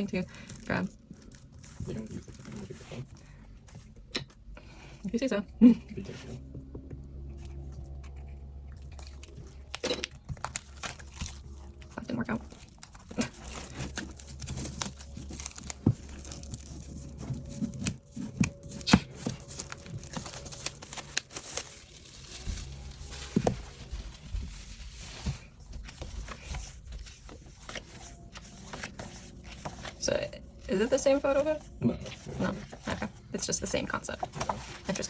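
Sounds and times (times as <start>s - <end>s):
rustling and crinkling: 0.0s - 4.8s, 5.9s - 35.0s
paper and plastic tearing: 8.9s - 25.4s.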